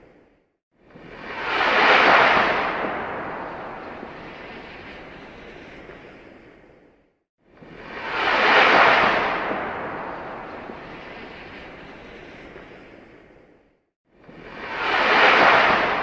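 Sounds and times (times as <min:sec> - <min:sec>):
rocket launch blast: 0:01.3 - 0:05.2, 0:08.0 - 0:12.0.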